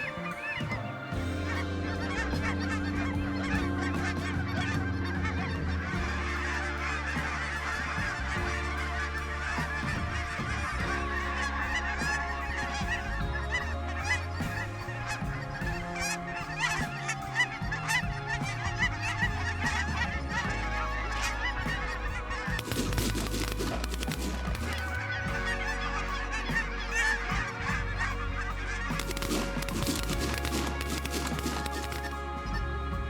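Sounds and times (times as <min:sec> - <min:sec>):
flock of geese honking: 0:00.0 - 0:33.0.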